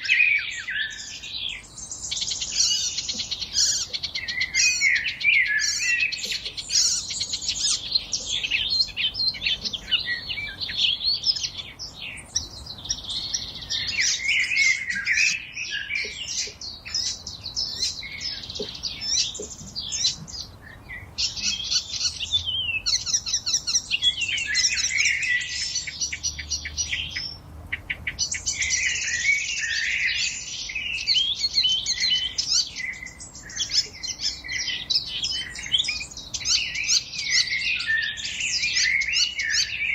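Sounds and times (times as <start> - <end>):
songbirds chorus: 0.0 - 39.9.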